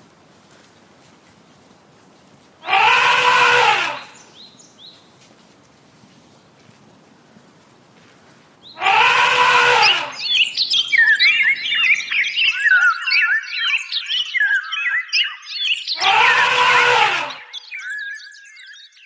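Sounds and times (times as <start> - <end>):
loud animal call: 2.6 - 4.2, 8.8 - 10.5, 16.0 - 17.5
flock of birds chirping: 3.2 - 5.3, 8.0 - 19.0.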